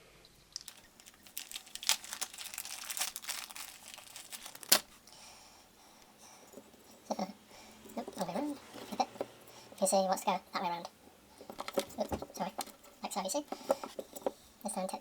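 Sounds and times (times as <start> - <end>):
plastic crinkling and rustling: 0.5 - 5.2, 11.4 - 14.4.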